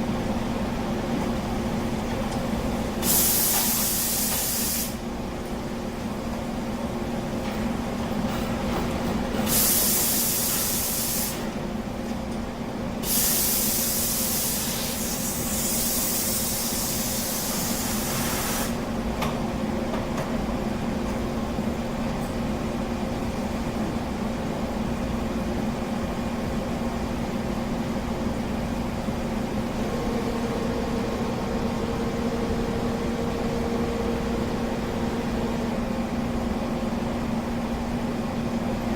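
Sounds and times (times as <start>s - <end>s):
boring mill mechanical hum: 0.0s - 38.9s
loud hissing spray bursts: 3.0s - 5.0s, 9.5s - 11.5s, 13.0s - 18.8s
second hum note: 29.9s - 35.9s.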